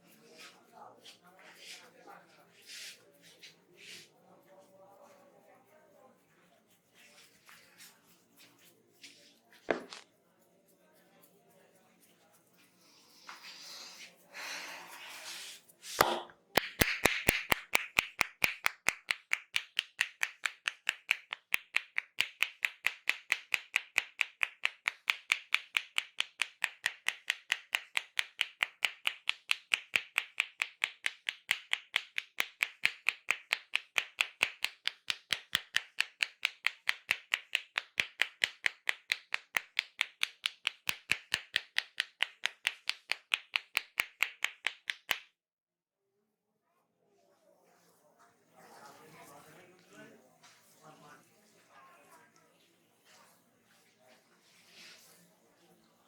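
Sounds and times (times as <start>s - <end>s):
hands rustling rub: 0.0s - 4.2s, 6.2s - 16.1s, 53.0s - 55.8s
hollow hand claps on head: 16.0s - 45.3s.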